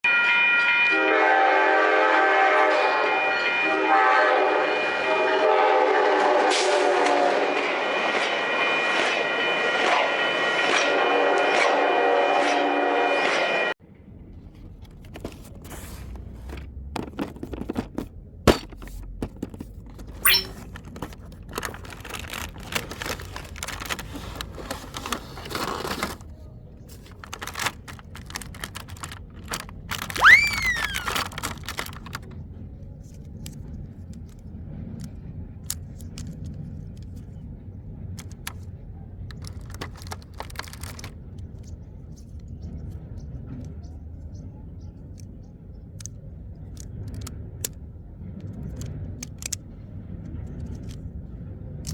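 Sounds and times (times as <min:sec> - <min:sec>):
toy packaging clicks and rustles: 0:14.5 - 0:32.4, 0:33.0 - 0:37.3, 0:38.2 - 0:42.4, 0:46.0 - 0:47.8, 0:50.4 - 0:51.1
squeak falling in pitch: 0:20.2 - 0:20.6, 0:30.2 - 0:31.2.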